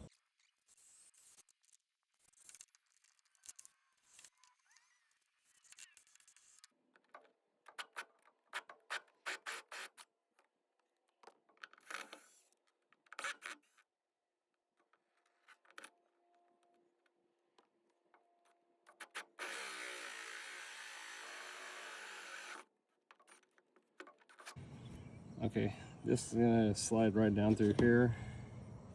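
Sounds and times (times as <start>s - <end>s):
steady noisy whir: 24.6s - 28.9s.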